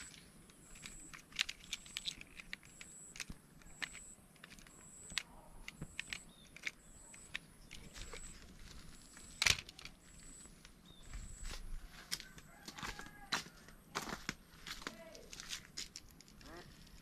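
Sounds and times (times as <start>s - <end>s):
plastic toy parts clicking: 0.0s - 8.4s, 9.3s - 10.0s.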